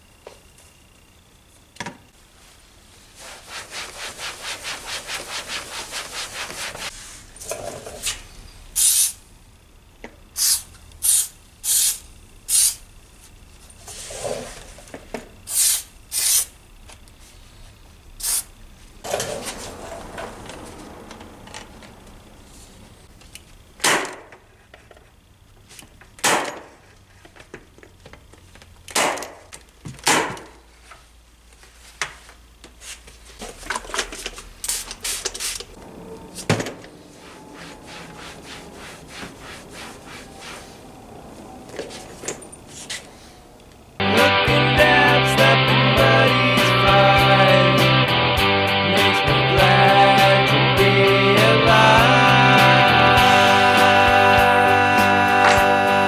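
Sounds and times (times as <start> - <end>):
scrubbing seat: 3.2 - 7.2, 37.1 - 41.0
short sharp hisses: 8.8 - 9.2, 10.4 - 12.8, 15.5 - 16.5, 18.2 - 18.5.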